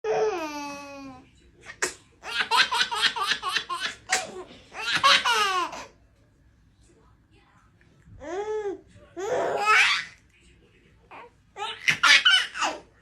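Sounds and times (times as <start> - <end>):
baby sneezing: 1.7 - 2.0, 3.8 - 4.5
baby giggling: 2.2 - 5.9.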